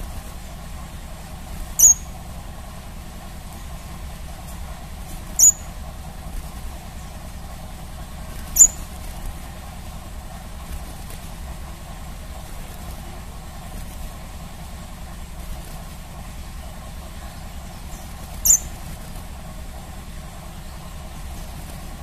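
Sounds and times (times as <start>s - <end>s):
steady low hum: 0.0s - 22.0s
bird chirps high-pitched: 1.8s - 2.2s, 5.4s - 5.7s, 8.6s - 8.9s, 17.9s - 18.8s.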